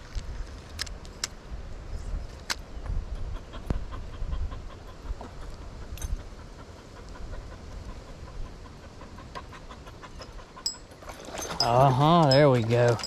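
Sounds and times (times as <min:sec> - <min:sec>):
wind rumble on microphone: 0:00.0 - 0:08.9
dog panting: 0:03.2 - 0:11.0.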